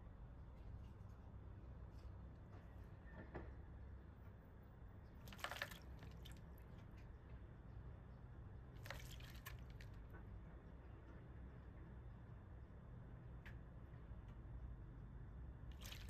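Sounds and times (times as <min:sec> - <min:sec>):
bird splashing in water: 0:05.2 - 0:06.6, 0:08.8 - 0:10.0, 0:15.7 - 0:16.0.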